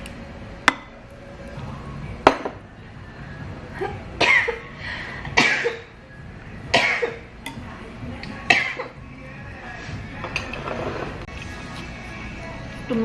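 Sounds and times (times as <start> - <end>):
person coughing: 4.2 - 4.6, 5.3 - 5.9, 6.7 - 7.2.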